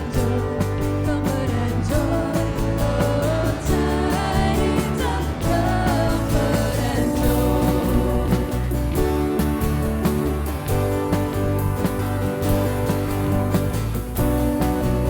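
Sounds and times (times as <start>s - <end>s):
person singing: 0.0s - 9.6s
live worship band: 0.0s - 15.0s.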